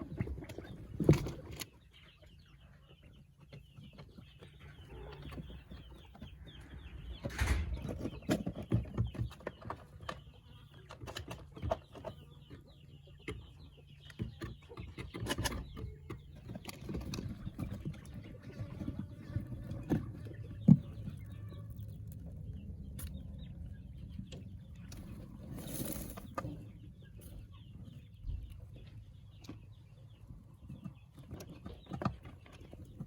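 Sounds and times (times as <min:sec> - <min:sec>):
poultry clucking: 0:00.0 - 0:33.0
short knocks and clicks: 0:07.1 - 0:08.4.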